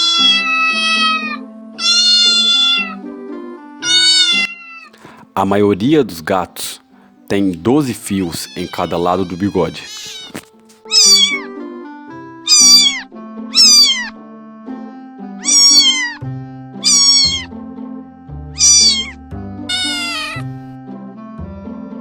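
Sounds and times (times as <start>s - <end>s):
cat meowing: 0.0s - 3.0s, 3.8s - 4.9s, 8.1s - 11.5s, 12.5s - 14.2s, 15.4s - 16.2s, 16.8s - 17.6s, 18.6s - 20.5s
background music: 0.0s - 22.0s.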